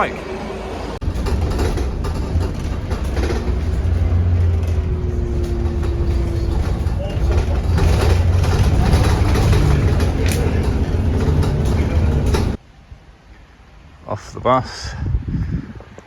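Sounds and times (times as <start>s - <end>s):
bus engine humming: 0.0s - 12.8s.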